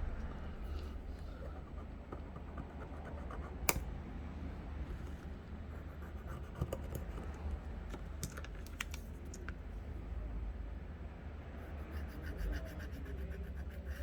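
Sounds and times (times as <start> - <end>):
clicks and taps of small parts: 7.9 - 9.6.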